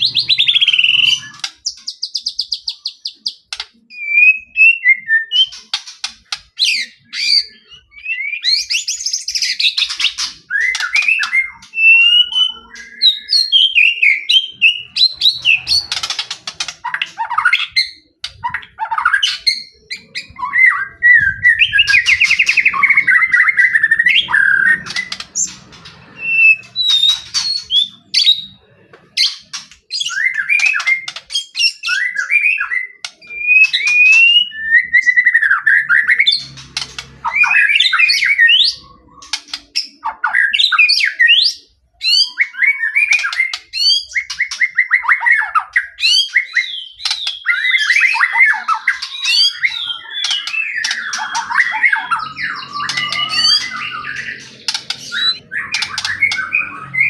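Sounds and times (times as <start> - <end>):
bird singing whistled phrases: 0.0 - 1.5, 3.9 - 5.6, 6.6 - 16.0, 26.2 - 28.6, 30.0 - 36.5, 39.9 - 57.0
harsh clicking bird chatter: 0.0 - 4.6, 5.3 - 7.4, 8.7 - 13.6, 14.5 - 28.4, 29.0 - 41.2, 43.0 - 57.0.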